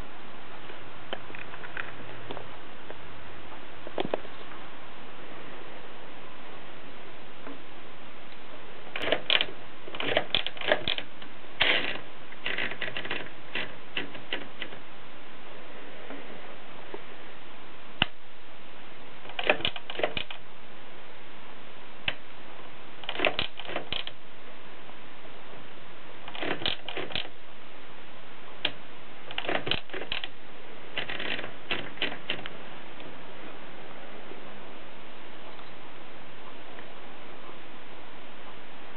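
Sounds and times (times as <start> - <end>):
steady background hiss: 0.0 - 38.9
typewriter keys striking: 9.0 - 14.7, 19.3 - 20.4, 23.0 - 24.1, 26.3 - 27.3, 29.3 - 30.3.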